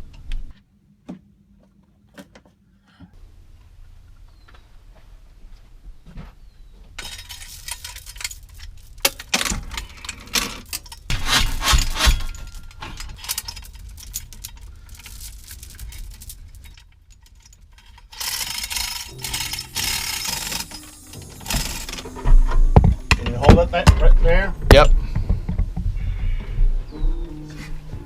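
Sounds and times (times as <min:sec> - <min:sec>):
metal clattering and scraping: 0:07.0 - 0:26.5.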